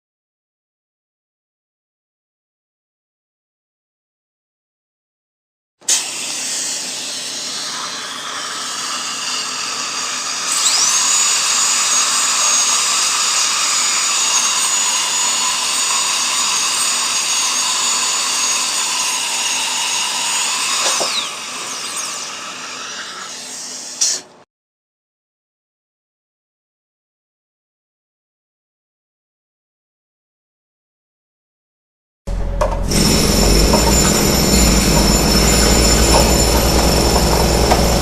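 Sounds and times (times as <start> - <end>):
high-pitched drill whining: 5.9 - 24.2, 32.3 - 38.0.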